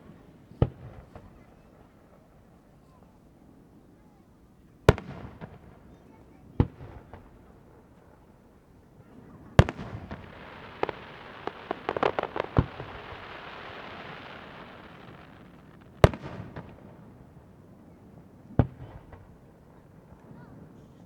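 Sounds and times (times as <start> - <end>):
small firework pops: 0.0 - 2.3, 4.9 - 8.0, 9.5 - 17.5, 18.5 - 19.5
firework shells bursting: 9.6 - 17.0
crackling hiss: 9.6 - 17.4.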